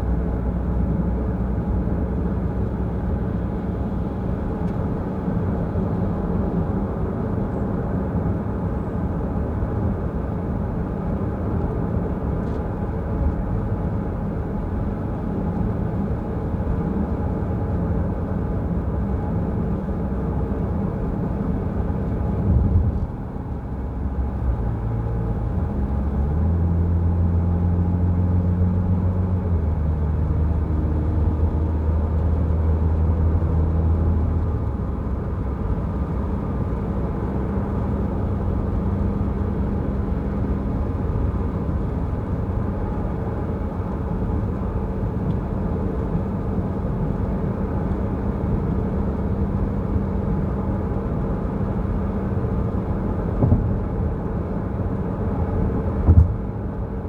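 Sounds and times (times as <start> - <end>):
car engine drone: 0.0 - 57.0
road and tyre noise: 0.0 - 57.0
brief thump: 53.4 - 53.8, 56.0 - 56.5.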